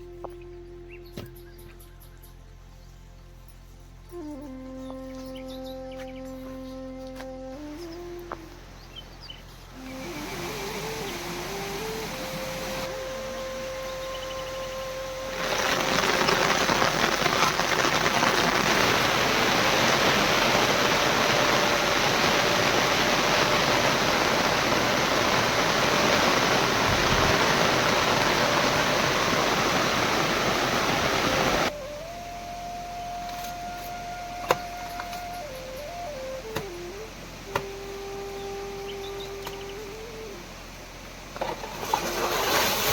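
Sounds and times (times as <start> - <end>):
heavy rain pouring: 9.8 - 42.9.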